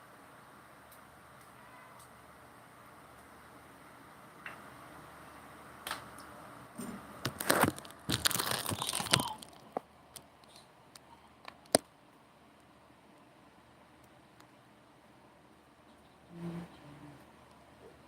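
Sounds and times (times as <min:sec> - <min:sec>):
crinkling and rustling: 0:06.8 - 0:11.9.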